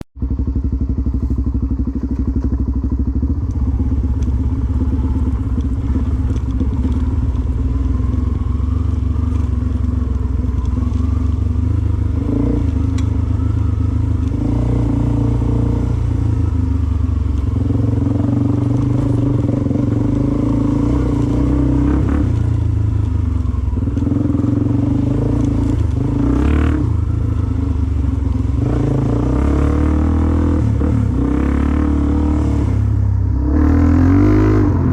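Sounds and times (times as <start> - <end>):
dirt bike engine revving: 10.7 - 16.6, 17.6 - 22.6, 24.0 - 27.5, 28.6 - 34.9.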